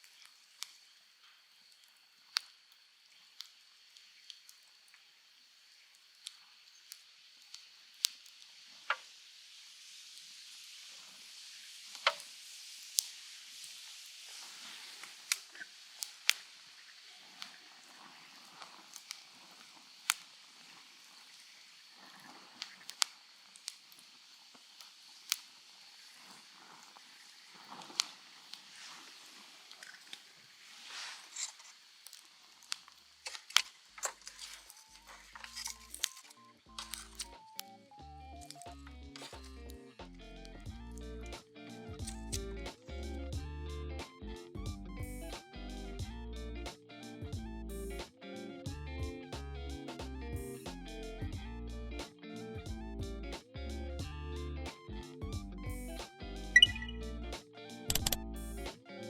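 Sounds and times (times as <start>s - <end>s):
campfire crackling: 0.0s - 59.0s
soft rustling: 26.0s - 37.4s
background music: 36.7s - 59.0s.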